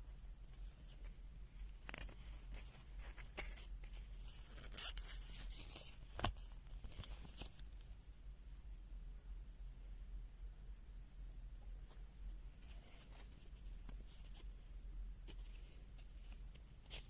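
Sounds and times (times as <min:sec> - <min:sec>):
steady low hum: 0:00.0 - 0:17.0
handling rubs and clicks: 0:00.5 - 0:07.7.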